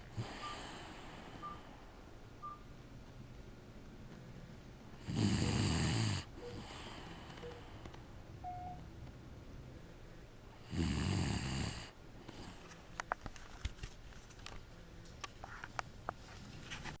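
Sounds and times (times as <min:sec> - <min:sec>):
loud snore: 0:05.0 - 0:07.1, 0:10.6 - 0:11.9.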